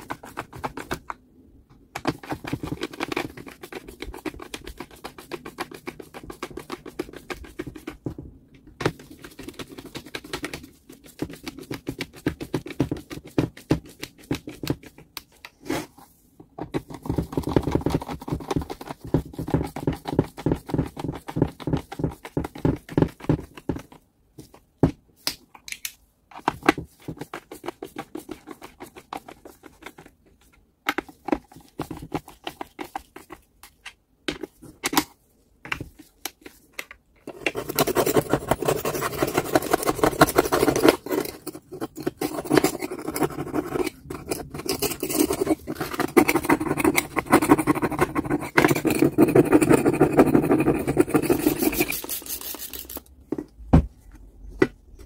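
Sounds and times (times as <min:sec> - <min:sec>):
scraping and clicking on metal parts: 0:48.4 - 0:53.1.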